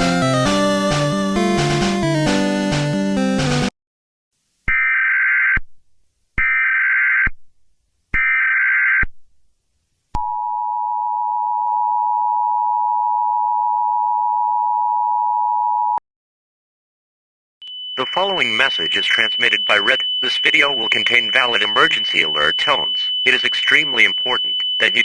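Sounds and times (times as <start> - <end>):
harsh two-tone alert signal: 18.0 - 25.0
warbling data tone bursts: 18.0 - 25.0.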